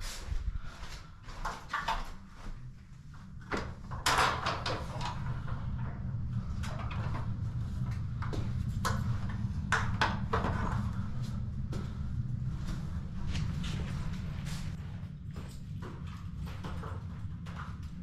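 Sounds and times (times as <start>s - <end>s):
steady low hum: 0.0s - 18.0s
filter and grille knocking and rattling: 3.5s - 12.0s.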